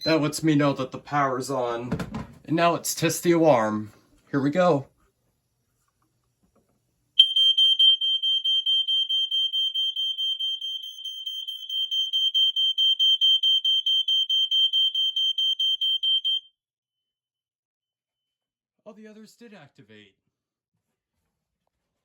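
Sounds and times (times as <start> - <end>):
smoke alarm beeping: 7.2 - 16.5
other smoke alarms sounding: 7.2 - 16.6.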